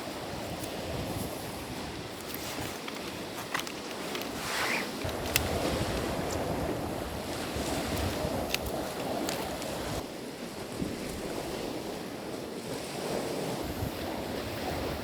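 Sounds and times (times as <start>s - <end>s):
wind blowing hard: 0.0s - 15.0s
waves washing against shore: 4.3s - 15.0s.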